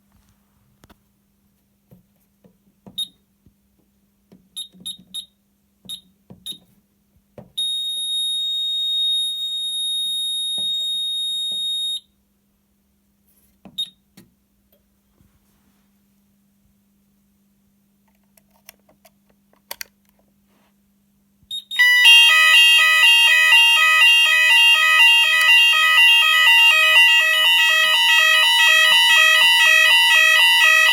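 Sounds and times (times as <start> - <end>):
steady high-pitched alarm tone: 21.8 - 30.9.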